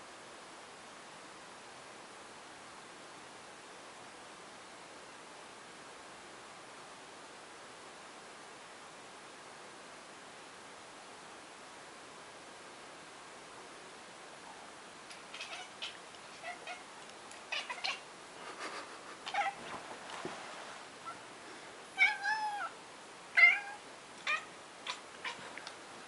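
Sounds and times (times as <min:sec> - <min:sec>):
cat chirping and chattering: 0:15.1 - 0:18.1.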